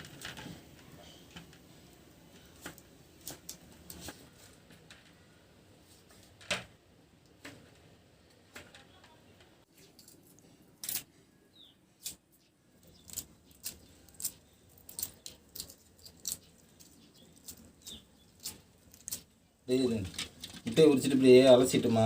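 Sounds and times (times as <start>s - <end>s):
eggshell cracking: 12.8s - 19.4s.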